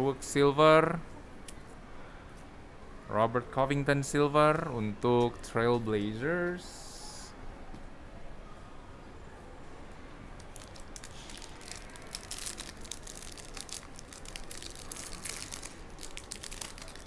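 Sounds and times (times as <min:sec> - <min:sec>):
foil wrapper crinkling and tearing: 0:10.4 - 0:17.0.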